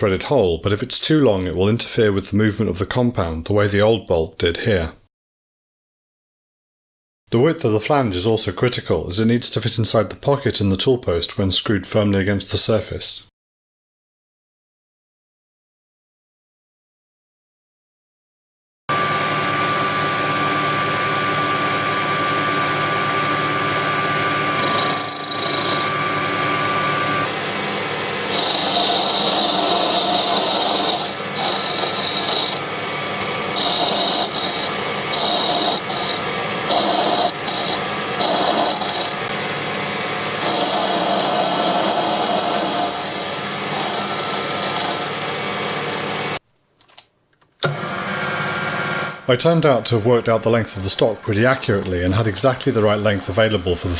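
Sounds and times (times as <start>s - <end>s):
lathe motor whine: 18.9s - 46.4s, 47.6s - 49.3s
cutting tool screeching on metal: 22.3s - 46.4s.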